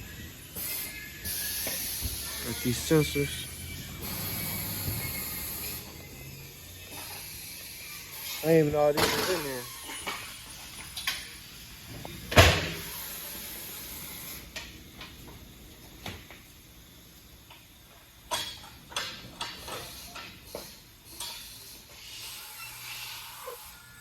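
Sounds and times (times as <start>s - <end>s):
loud thump of door shutting: 12.3s - 12.8s.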